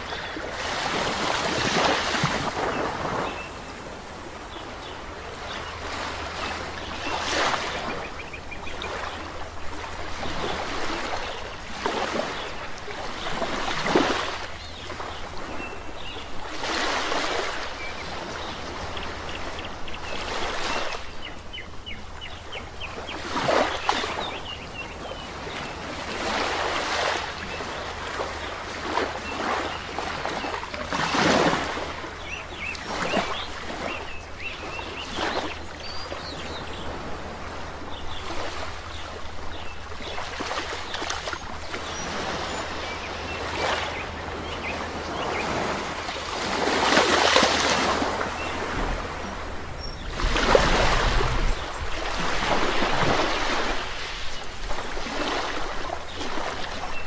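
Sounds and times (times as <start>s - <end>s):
waves washing on shore: 0.0s - 57.0s
birds chirping faintly: 1.7s - 57.0s.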